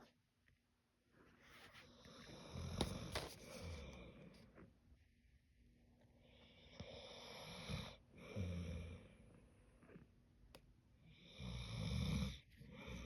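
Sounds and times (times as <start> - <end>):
dog snoring softly: 6.2 - 10.1, 11.0 - 13.0.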